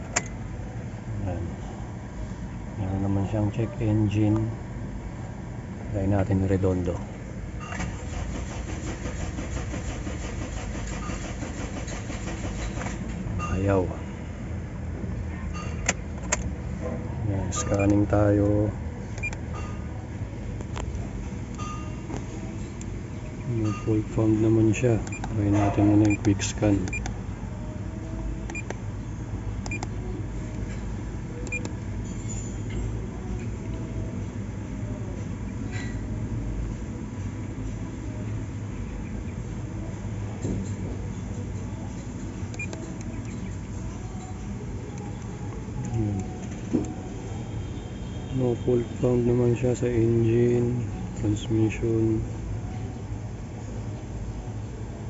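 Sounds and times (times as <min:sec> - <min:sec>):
steady low hum: 0:00.0 - 0:55.0
starter cranking engine: 0:07.8 - 0:13.0.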